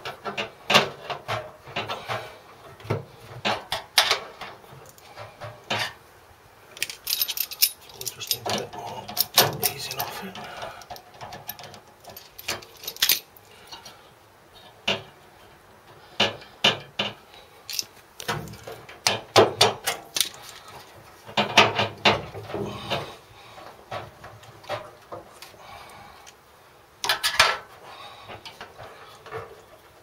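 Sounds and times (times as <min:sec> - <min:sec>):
screwdrivers clanking on metal: 0:06.8 - 0:13.9.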